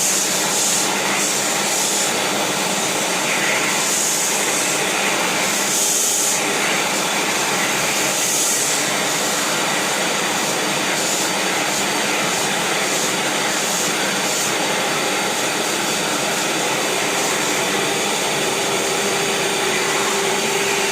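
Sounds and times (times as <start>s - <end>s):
vacuum cleaner running: 0.0s - 20.9s.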